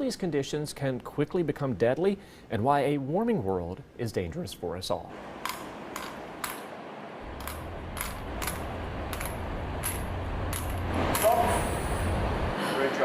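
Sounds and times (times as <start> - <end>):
steady low hum: 5.0 - 13.0.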